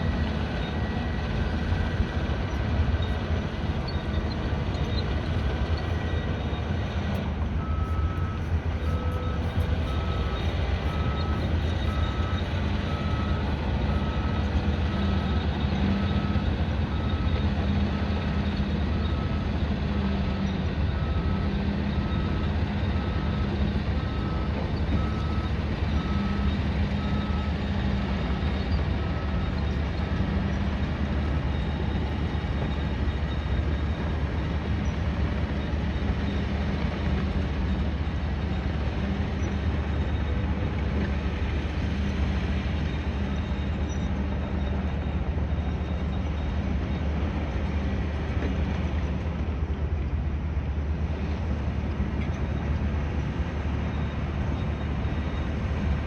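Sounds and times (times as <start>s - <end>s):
low rumble of engines: 0.0s - 56.0s
reversing alarm beeps: 0.5s - 17.6s, 18.6s - 30.6s.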